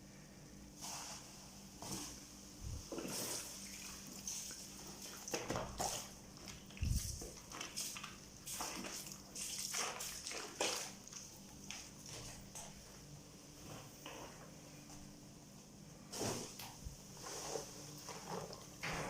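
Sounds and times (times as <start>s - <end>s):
wet clothes scrubbed in water: 2.1s - 12.8s.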